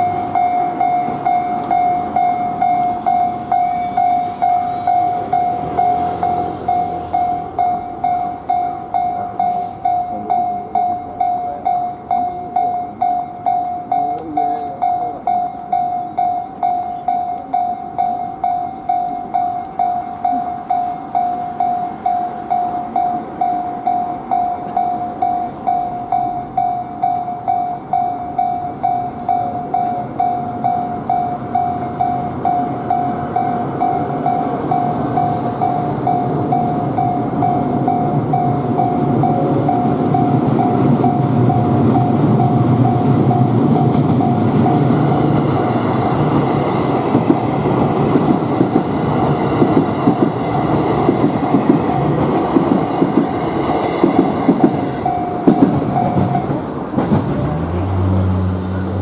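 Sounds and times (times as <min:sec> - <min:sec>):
level-crossing warning bell ringing: 0:00.0 - 0:57.1
train passing with low rumble: 0:00.0 - 0:59.0.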